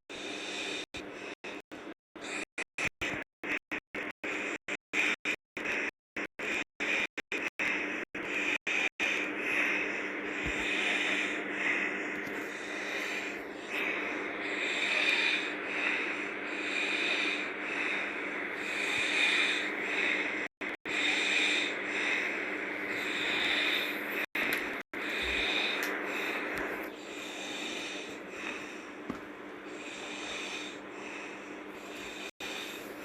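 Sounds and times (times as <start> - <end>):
girl snoring: 6.5 - 28.8.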